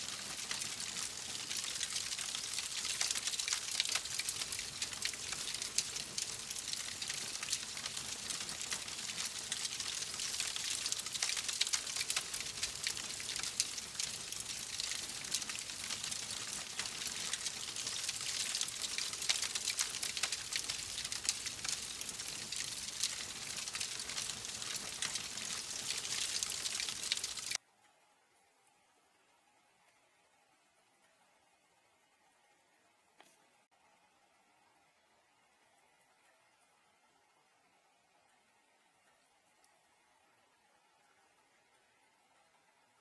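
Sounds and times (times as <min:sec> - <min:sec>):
wood fire crackling and popping: 0:00.0 - 0:27.6.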